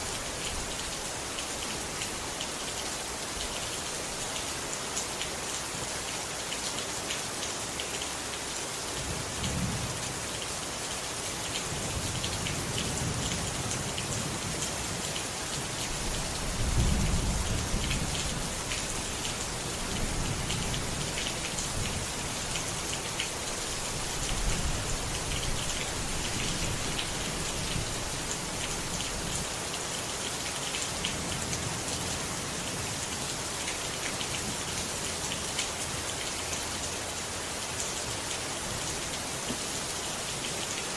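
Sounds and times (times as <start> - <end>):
rain pattering: 0.0 - 40.9.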